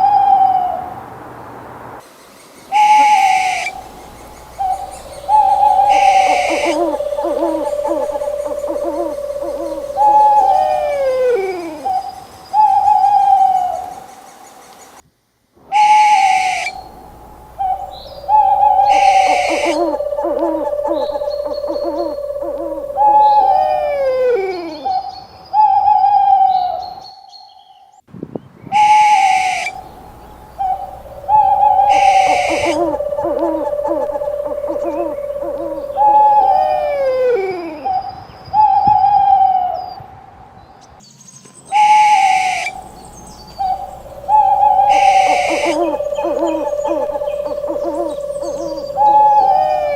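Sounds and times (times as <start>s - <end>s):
owl hooting: 0.0s - 0.9s, 2.7s - 14.4s, 15.7s - 26.9s, 28.8s - 39.8s, 41.7s - 49.9s
owl hissing harshly: 2.8s - 12.0s, 15.8s - 24.2s, 30.6s - 37.2s, 41.8s - 49.9s.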